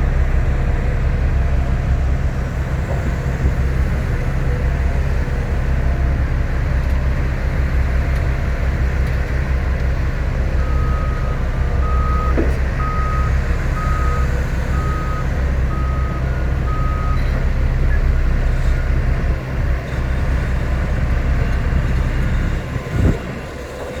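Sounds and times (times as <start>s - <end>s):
heavy vehicle engine rumbling: 0.0s - 24.0s
reversing alarm beeps: 10.6s - 19.0s.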